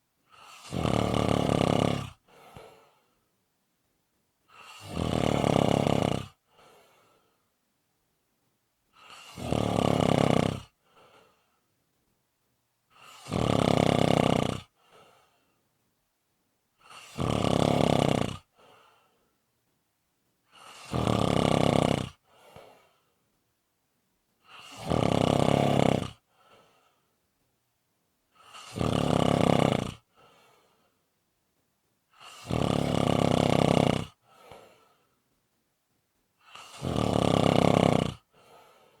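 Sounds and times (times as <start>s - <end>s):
person snoring: 0.3s - 2.8s, 4.5s - 6.8s, 9.0s - 10.8s, 12.9s - 14.8s, 16.8s - 18.6s, 20.5s - 22.9s, 24.4s - 26.2s, 28.4s - 30.1s, 32.2s - 34.9s, 36.4s - 39.0s
faint breath: 2.2s - 3.3s, 6.4s - 7.6s, 10.7s - 11.8s, 14.7s - 15.8s, 18.4s - 19.4s, 22.2s - 23.4s, 26.2s - 27.2s, 30.0s - 31.1s, 34.2s - 35.2s, 38.2s - 39.0s.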